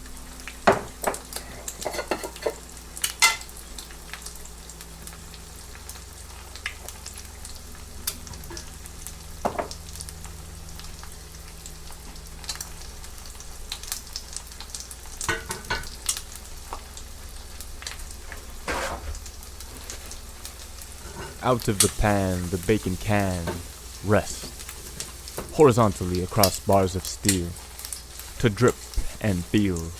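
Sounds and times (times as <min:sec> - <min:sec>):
bacon sizzling in a frying pan: 0:00.0 - 0:29.9
utensil scraping against pan: 0:18.6 - 0:19.1, 0:21.0 - 0:22.6.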